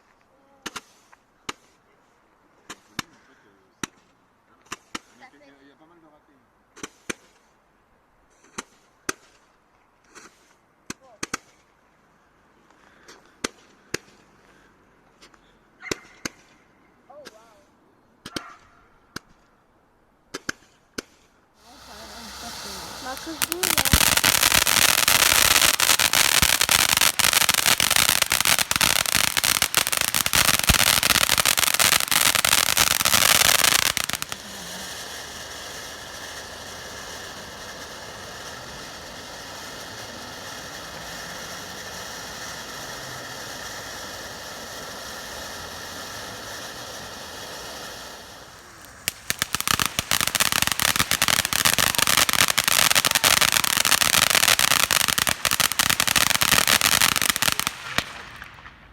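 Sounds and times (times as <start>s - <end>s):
fireworks crackling and popping: 0.0s - 1.9s, 2.6s - 3.2s, 3.8s - 5.5s, 6.7s - 7.6s, 8.3s - 11.8s, 12.6s - 17.6s, 20.3s - 58.9s
steady hiss: 20.5s - 58.9s.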